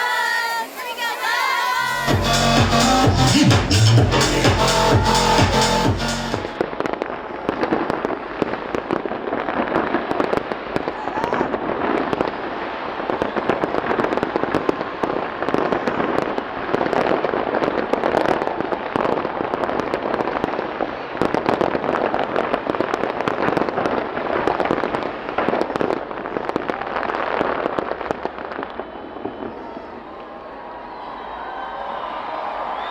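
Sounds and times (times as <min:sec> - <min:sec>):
dance music with a beat: 0:00.0 - 0:06.6.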